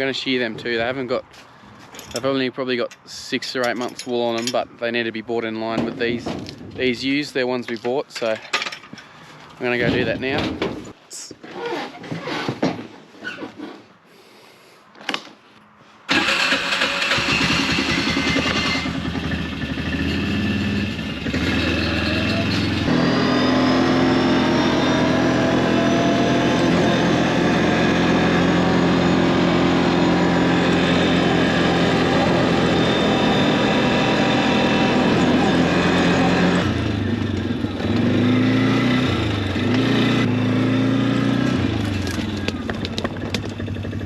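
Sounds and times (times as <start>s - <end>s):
vehicle engine starting and running: 16.1s - 44.0s.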